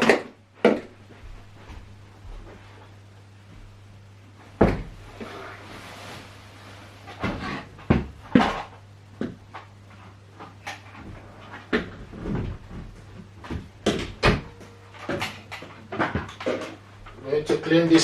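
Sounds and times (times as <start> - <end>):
vacuum cleaner parts knocking: 10.4 - 16.8.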